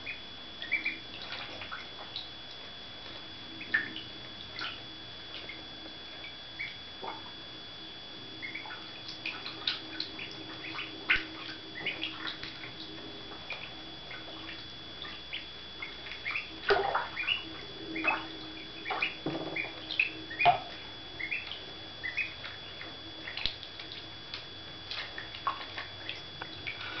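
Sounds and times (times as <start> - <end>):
ducklings peeping: 0.0 - 5.6, 6.2 - 7.2, 8.4 - 27.0
faint steady hum: 0.0 - 27.0
water splashing and dripping: 0.6 - 2.6, 8.5 - 27.0.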